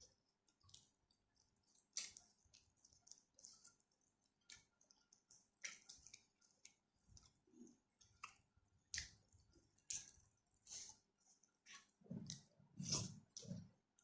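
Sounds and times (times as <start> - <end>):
wet chewing and lip smacks: 0.0 - 14.0.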